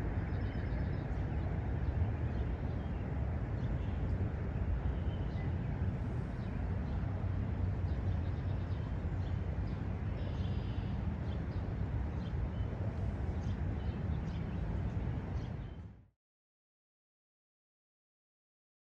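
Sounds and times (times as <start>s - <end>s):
steady low rumble: 0.0s - 16.0s
faint bird chirps: 10.2s - 11.0s.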